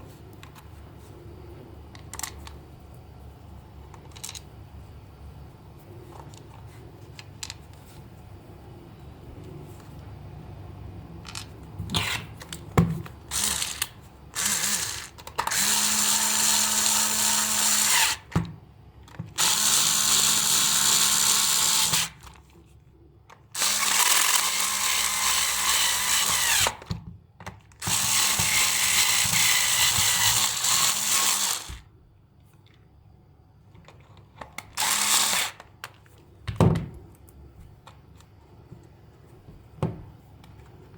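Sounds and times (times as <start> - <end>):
handheld power tool running: 13.3 - 18.3, 19.4 - 22.2, 23.6 - 26.8, 27.8 - 31.8, 34.8 - 35.6.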